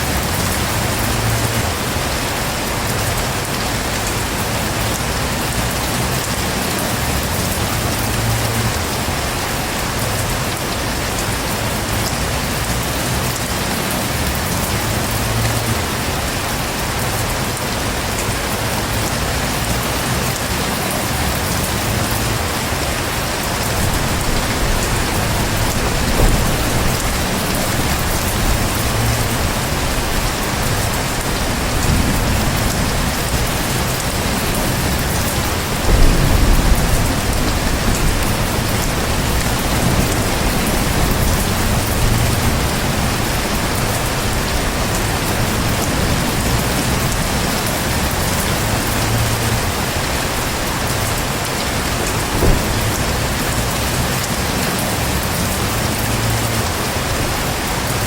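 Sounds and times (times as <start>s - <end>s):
heavy rain falling: 0.0s - 58.0s
low rumble of thunder: 18.9s - 55.4s.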